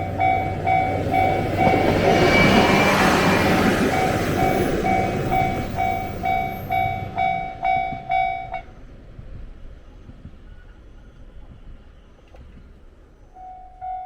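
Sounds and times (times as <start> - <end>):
level-crossing warning bell: 0.0 - 8.8, 13.3 - 14.0
diesel railcar engine hum: 0.0 - 14.0
train wheel noise: 0.0 - 14.0.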